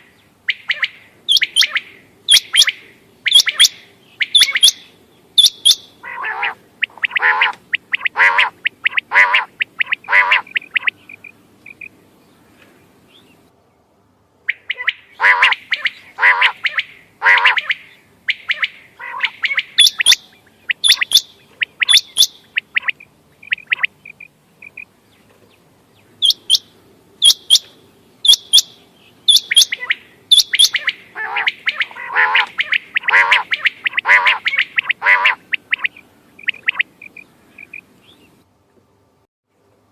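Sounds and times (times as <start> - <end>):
quail calling: 0.0 - 12.0, 14.5 - 24.9, 26.2 - 37.9
high-pitched bird notes: 0.5 - 5.9, 17.5 - 23.9, 26.2 - 36.9.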